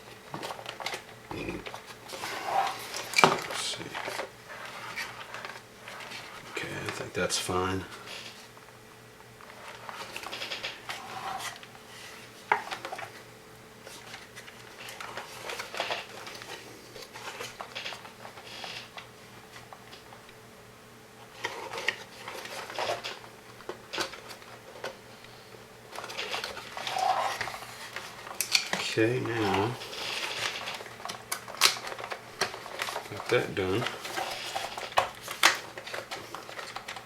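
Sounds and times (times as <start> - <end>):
small hard parts clicking and rattling: 25.9 - 37.0.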